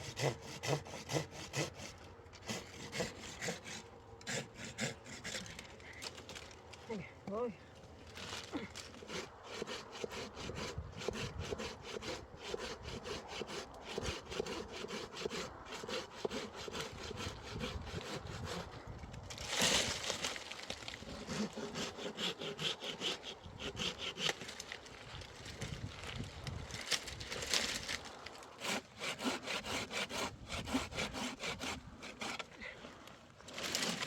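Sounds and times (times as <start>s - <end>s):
hand saw cutting wood: 0.0s - 5.8s, 8.9s - 20.4s, 21.0s - 24.8s, 28.6s - 34.0s.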